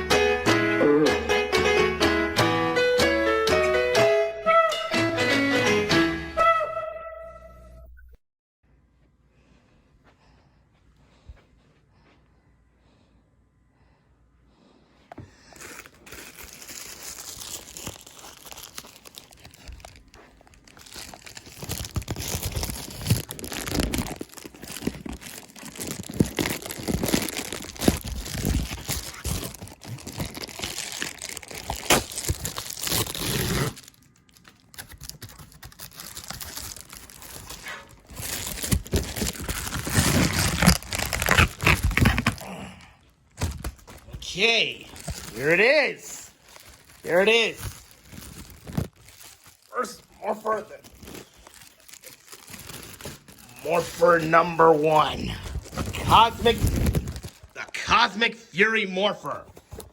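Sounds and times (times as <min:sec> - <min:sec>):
wrapping crinkling and tearing: 0:15.4 - 0:57.8.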